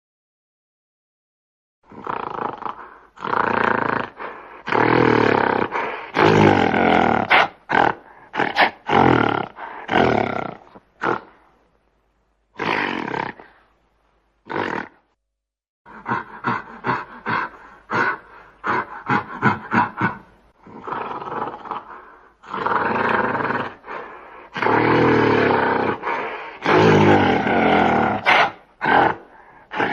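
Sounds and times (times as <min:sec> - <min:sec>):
creature roaring: 0:24.5 - 0:26.0, 0:26.6 - 0:29.9.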